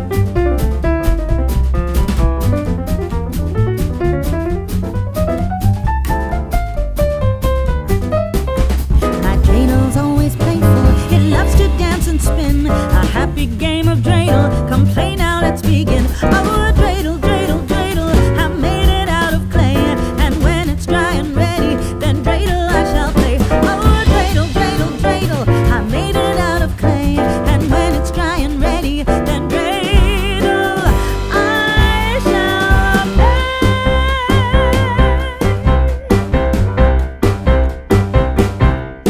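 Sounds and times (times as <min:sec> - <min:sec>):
music with singing voice and beat: 0:09.0 - 0:37.4.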